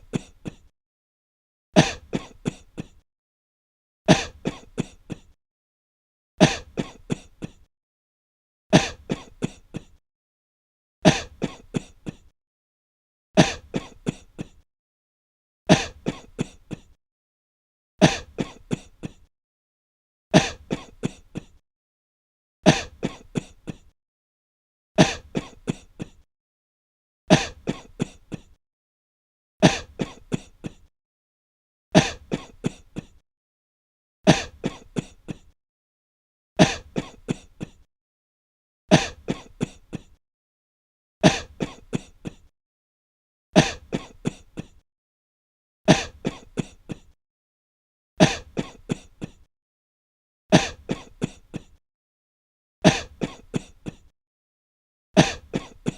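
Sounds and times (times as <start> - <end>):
person coughing breathlessly: 0.0 - 0.7, 1.8 - 3.0, 4.1 - 5.4, 6.4 - 7.7, 8.7 - 10.0, 11.0 - 12.3, 13.4 - 14.6, 15.7 - 17.0, 18.0 - 19.3, 20.3 - 21.6, 22.6 - 23.9, 25.0 - 26.2, 27.3 - 28.6, 29.6 - 30.9, 32.0 - 33.2, 34.3 - 35.6, 36.6 - 37.9, 38.9 - 40.2, 41.2 - 42.5, 43.6 - 44.8, 45.9 - 47.2, 48.2 - 49.5, 50.5 - 51.8, 52.9 - 54.1, 55.2 - 55.9.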